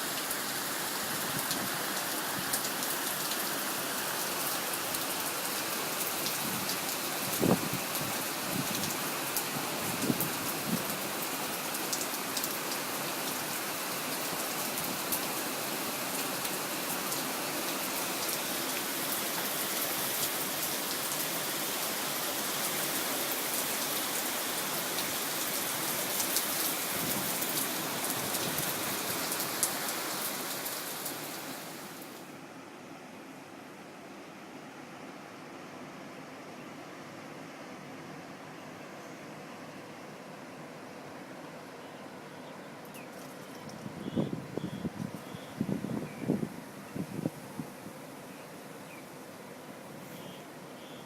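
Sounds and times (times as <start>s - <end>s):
heavy rain falling: 0.0s - 32.3s.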